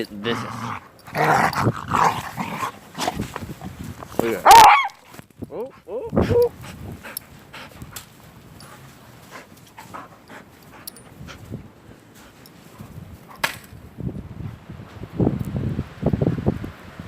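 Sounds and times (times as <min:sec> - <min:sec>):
stick cracking: 0:13.4 - 0:13.8.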